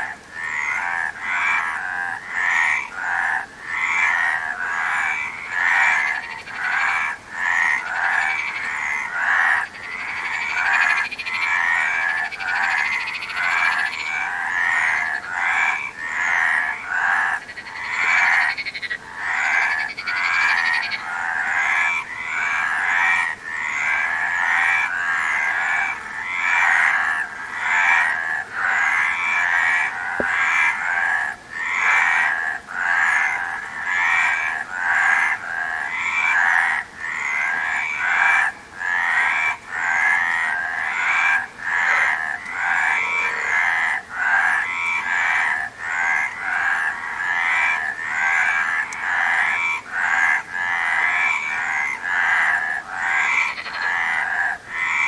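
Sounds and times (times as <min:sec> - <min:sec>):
frogs croaking: 0:00.0 - 0:55.0.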